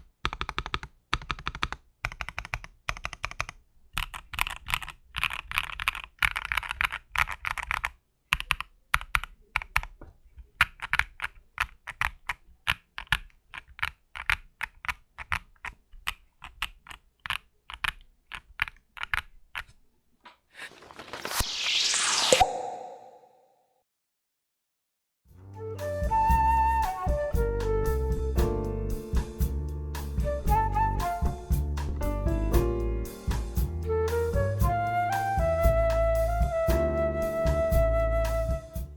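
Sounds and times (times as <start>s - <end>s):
mechanical keyboard typing: 0.0s - 19.7s.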